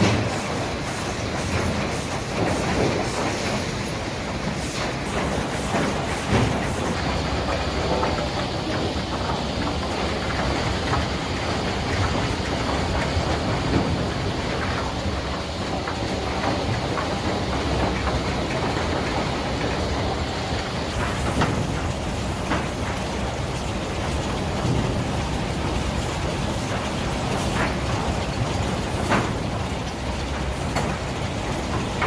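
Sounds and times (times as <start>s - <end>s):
machinery knocks: 0.0s - 3.6s
mill machinery clattering: 0.0s - 32.0s.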